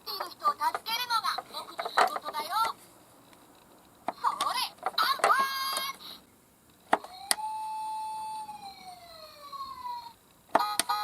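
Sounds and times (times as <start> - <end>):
toy electronic siren: 7.0 - 11.0.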